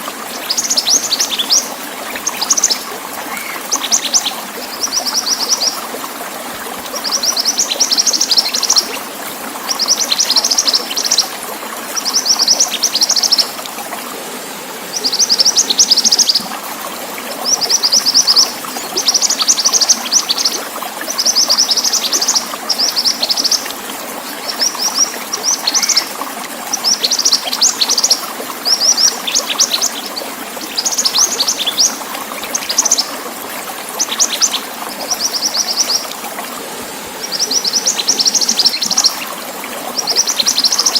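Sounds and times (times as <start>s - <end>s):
trickling water: 0.0s - 40.9s
songbird chirping: 14.9s - 16.6s, 24.4s - 26.2s, 37.2s - 40.9s.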